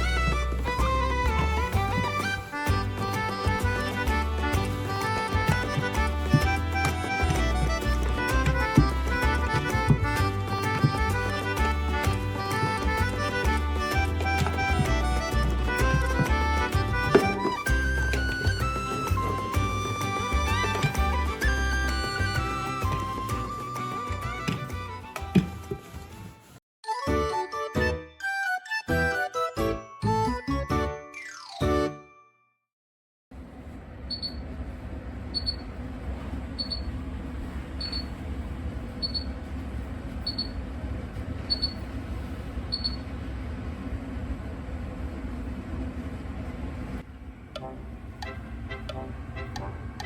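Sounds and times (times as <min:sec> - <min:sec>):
heavy bass beat: 0:00.0 - 0:23.5
range hood fan humming: 0:00.0 - 0:25.0, 0:33.4 - 0:50.0
upbeat folk tune with flute: 0:00.0 - 0:31.0.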